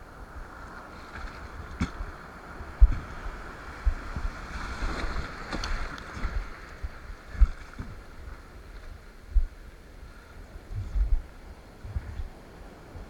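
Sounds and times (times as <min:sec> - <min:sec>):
ocean water rushing and splashing: 0:00.0 - 0:13.0
wind buffeting microphone: 0:00.0 - 0:13.0.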